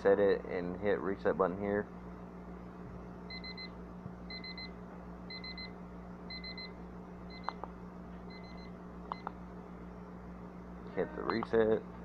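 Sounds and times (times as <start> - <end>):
kitchen timer high beeps: 3.3 - 3.7, 4.3 - 4.7, 5.3 - 5.7, 6.3 - 6.7.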